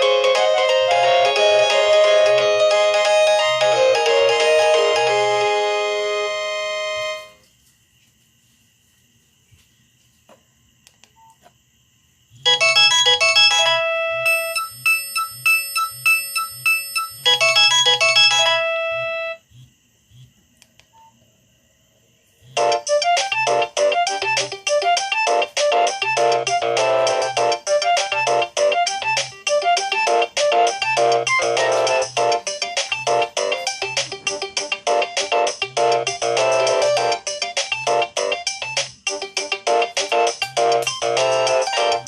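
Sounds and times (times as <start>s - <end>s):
mobile phone ringtone: 0.0s - 7.4s, 12.4s - 19.4s, 22.6s - 34.0s, 40.2s - 42.0s.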